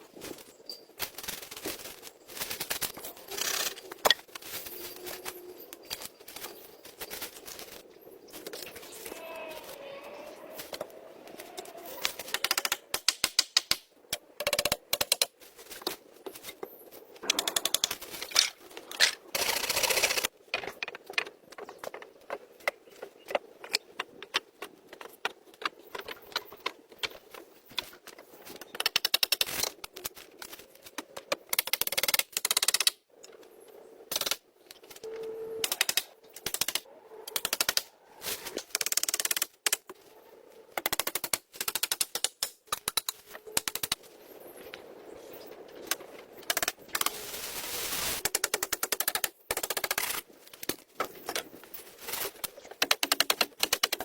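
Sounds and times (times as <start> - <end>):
rapid sharp clicks and knocks: 52.4 - 54.0.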